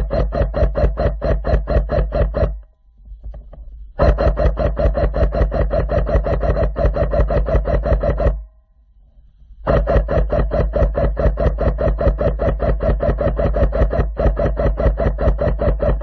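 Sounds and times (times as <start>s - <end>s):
airsoft gun full-auto bursts: 0.0s - 2.6s, 4.0s - 8.4s, 9.6s - 16.0s.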